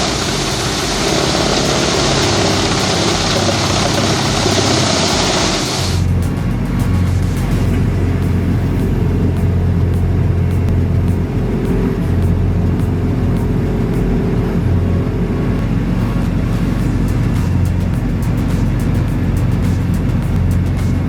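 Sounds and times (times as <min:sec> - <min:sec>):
wood chipper engine running: 0:00.0 - 0:15.8
background music: 0:00.0 - 0:21.0.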